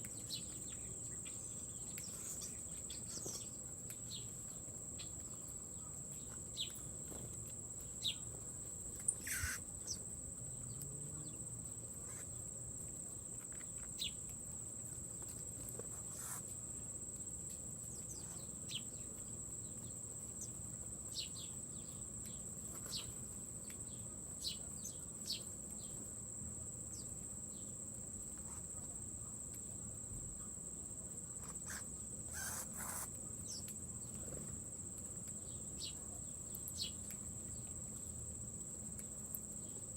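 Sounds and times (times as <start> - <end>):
insect chorus drone: 0.0 - 39.9.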